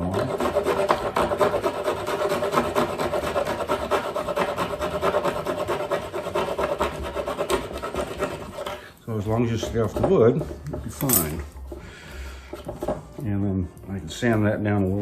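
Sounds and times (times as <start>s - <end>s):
tool rasping through wood: 0.0s - 11.0s.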